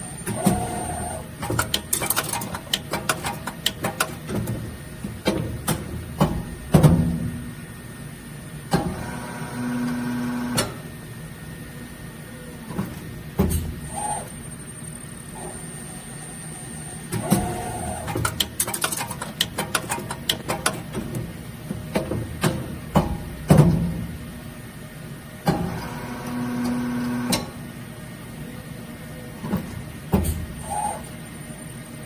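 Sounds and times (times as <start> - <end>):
machine humming: 0.0 - 32.0
machine clicks and knocks: 1.4 - 7.2, 17.2 - 24.1.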